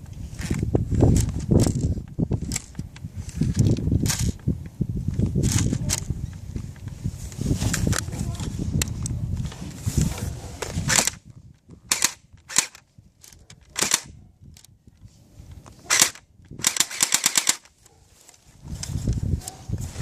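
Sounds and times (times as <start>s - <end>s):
airsoft guns firing: 13.8s - 14.1s, 15.9s - 17.7s.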